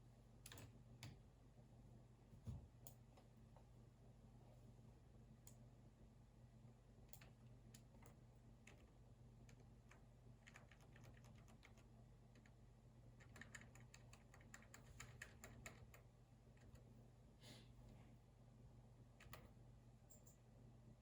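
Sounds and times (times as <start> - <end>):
faint computer keyboard typing: 0.4 - 1.2, 7.0 - 17.0, 19.2 - 20.4.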